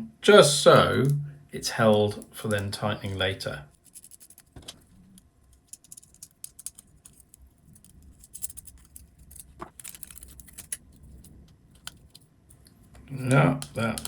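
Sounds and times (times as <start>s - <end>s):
screws and nuts rattling on plate: 3.7s - 12.2s.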